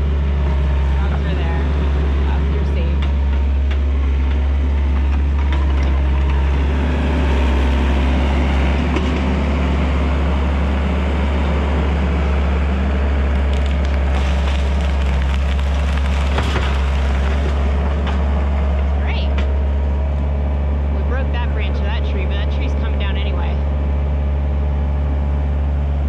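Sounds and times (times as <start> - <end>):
diesel engine running loud: 0.0 - 26.0
sharp cracks of wood: 13.2 - 18.6.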